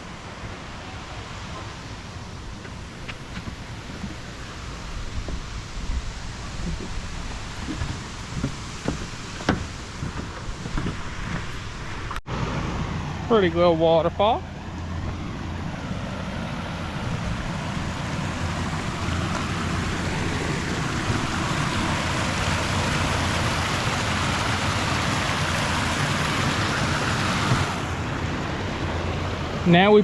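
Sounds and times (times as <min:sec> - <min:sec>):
waterfall splashing: 0:16.4 - 0:30.0.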